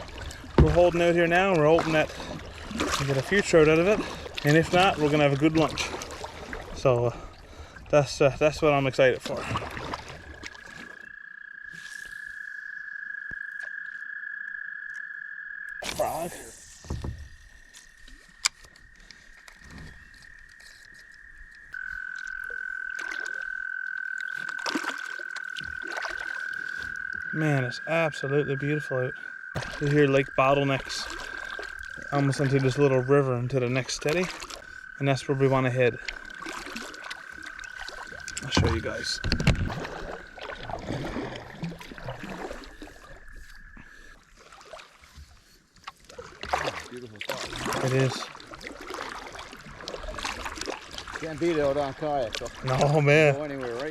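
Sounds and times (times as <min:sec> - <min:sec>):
water trickling off paddle: 0:00.0 - 0:12.5, 0:15.8 - 0:28.0, 0:28.9 - 0:53.9
paddle splashing water: 0:00.0 - 0:15.0, 0:15.8 - 0:53.9
high steady frog trill: 0:10.9 - 0:16.9, 0:20.0 - 0:40.4.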